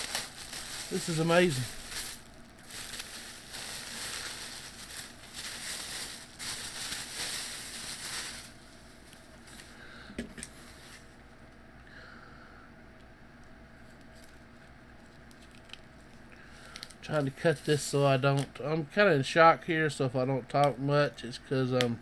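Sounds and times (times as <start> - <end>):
plastic packaging crinkling: 0.0 - 9.8, 10.4 - 11.2, 15.0 - 18.2.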